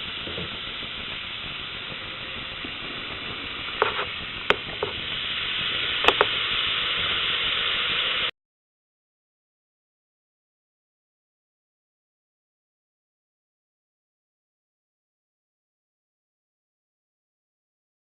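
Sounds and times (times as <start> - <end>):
baking soda and vinegar fizzing: 0.0 - 8.3
sharp pops: 0.0 - 8.3.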